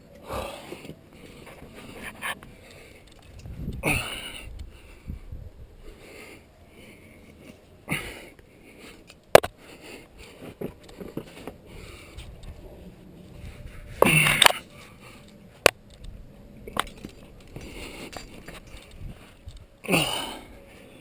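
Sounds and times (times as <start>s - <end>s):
climber breathing: 0.0s - 21.0s.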